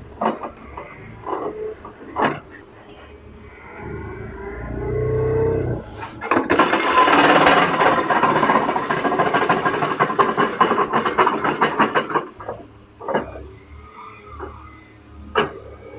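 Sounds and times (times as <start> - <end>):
pile driver rattling: 6.2 - 12.6.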